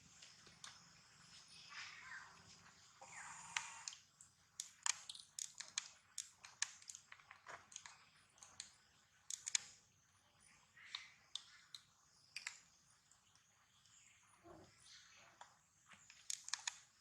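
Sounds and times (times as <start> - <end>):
sharp crisp clicks and crunches: 4.6 - 9.8, 10.8 - 12.7, 15.4 - 17.0.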